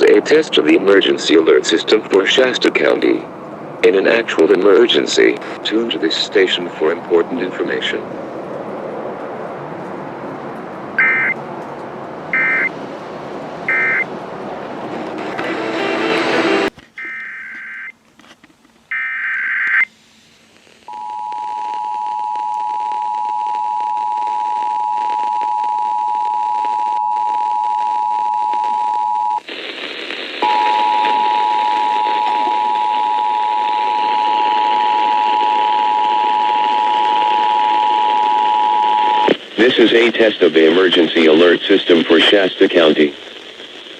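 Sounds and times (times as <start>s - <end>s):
radio hiss: 0.0s - 8.1s, 12.3s - 12.7s, 29.4s - 43.9s
digital data tone bursts: 11.0s - 11.4s, 12.4s - 12.7s, 13.7s - 14.1s
two-tone attention signal: 13.7s - 14.1s.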